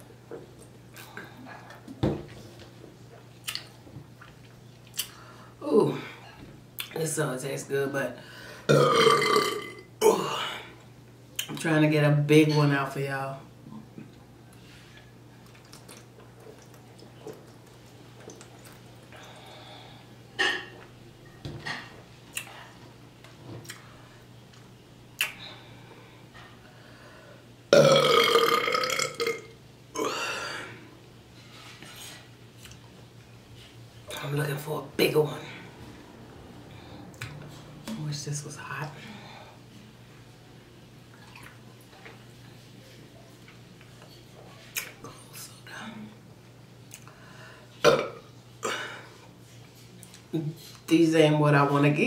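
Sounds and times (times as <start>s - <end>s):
woman burping: 8.7s - 10.7s, 27.7s - 30.7s, 47.8s - 49.0s.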